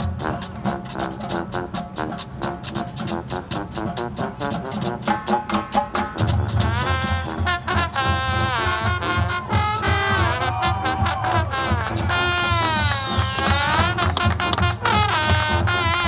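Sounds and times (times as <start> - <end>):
percussion strokes: 0.0 - 16.0
brass section chords: 6.2 - 16.0.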